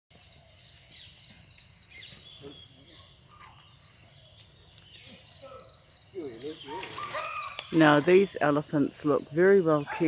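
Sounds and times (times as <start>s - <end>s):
insects trilling: 0.1s - 10.0s.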